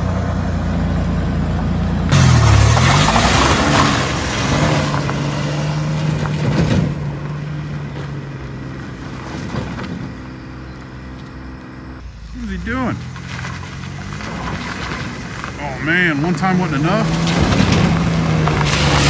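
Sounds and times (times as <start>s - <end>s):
vehicle engine pulling away: 0.0s - 19.0s
tyre noise rushing: 12.1s - 19.0s.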